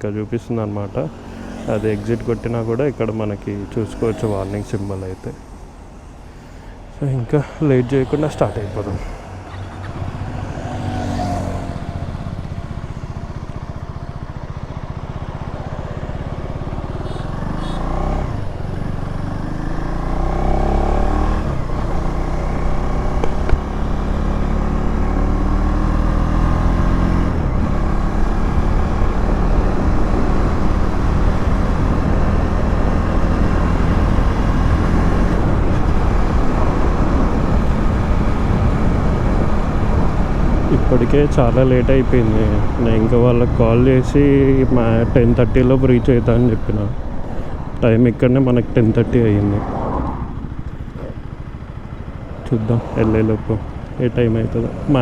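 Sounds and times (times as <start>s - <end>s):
motorcycle engine accelerating: 0.0s - 55.0s.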